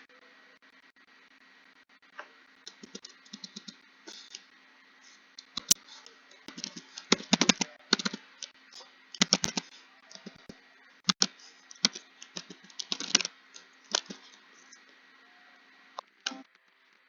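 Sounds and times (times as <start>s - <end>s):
computer keyboard typing: 2.7s - 4.4s, 6.5s - 8.5s, 9.2s - 14.4s.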